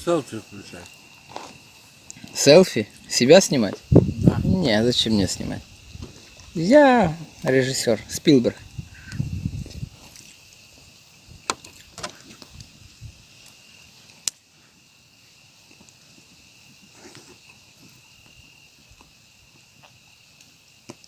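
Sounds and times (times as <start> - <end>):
crickets chirring: 0.0 - 21.0.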